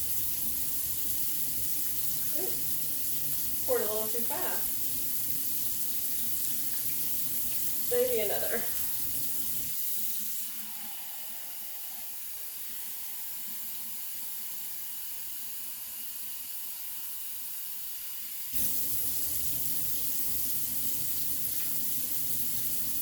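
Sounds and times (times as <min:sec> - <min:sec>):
tap water running into cup: 0:00.0 - 0:11.4, 0:18.2 - 0:23.0.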